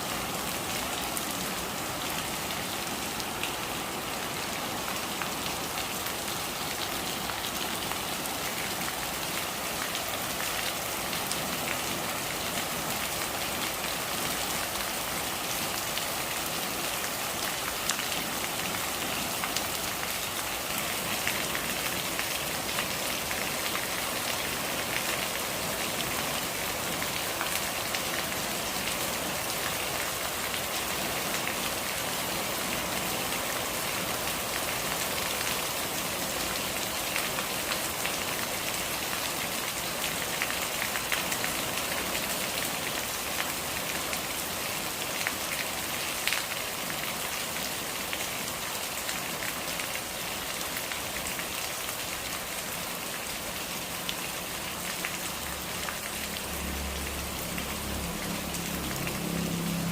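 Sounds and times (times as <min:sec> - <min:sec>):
rain pattering: 0:00.0 - 0:59.9.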